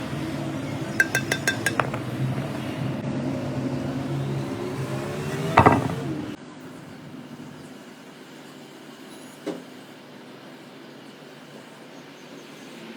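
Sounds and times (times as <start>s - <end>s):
hammer taps on metal: 1.0s - 2.6s
loud metallic clang: 1.0s - 2.6s.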